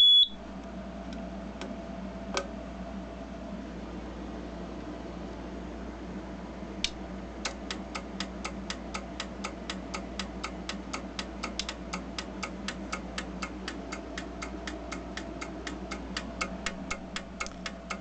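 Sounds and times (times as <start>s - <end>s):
low steady hum: 0.0s - 18.0s
alarm panel relays clicking: 7.4s - 18.0s.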